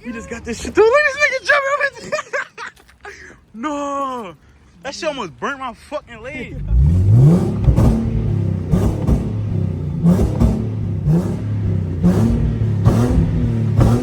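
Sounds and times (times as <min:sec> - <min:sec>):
car engine revving: 0:06.4 - 0:14.0
exhaust pops and cracks: 0:07.3 - 0:14.0.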